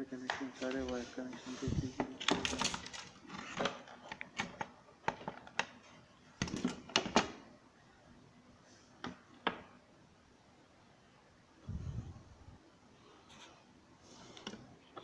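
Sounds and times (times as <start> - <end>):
clicks and knocks from handling parts: 2.0 - 7.4.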